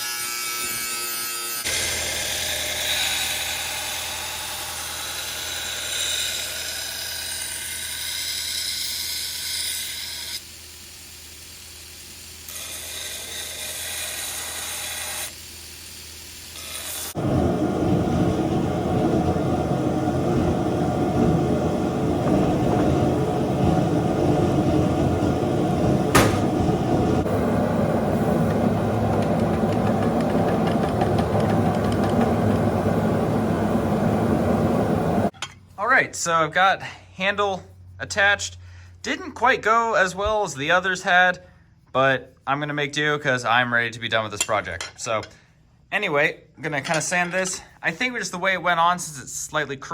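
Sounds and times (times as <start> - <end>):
hissing grinder: 1.4 - 35.3
electric motor running: 16.6 - 35.3
sharp click: 26.2 - 26.6.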